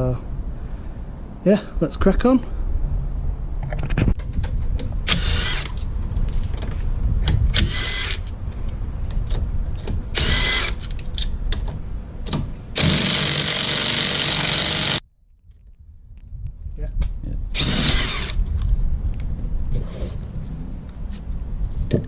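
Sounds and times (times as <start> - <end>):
impact wrench running: 12.8 - 15.0.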